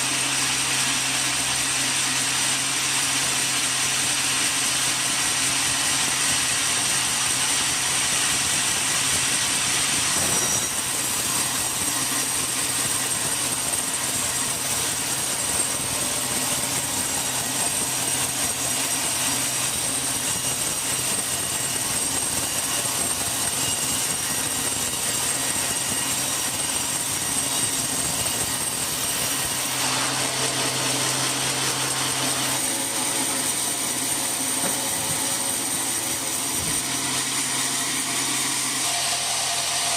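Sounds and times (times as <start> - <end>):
sawmill machinery whining: 0.0 - 39.9.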